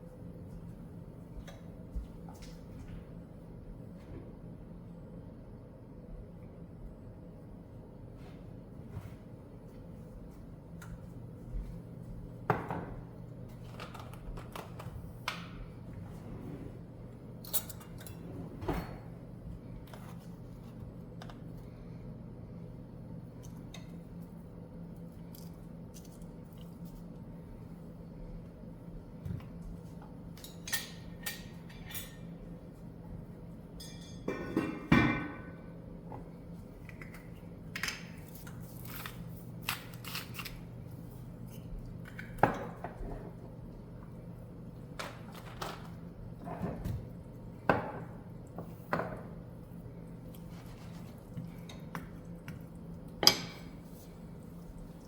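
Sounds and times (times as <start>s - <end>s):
steady low hum: 0.0s - 55.0s
dishes and utensils clinking: 30.4s - 32.4s, 33.8s - 35.6s.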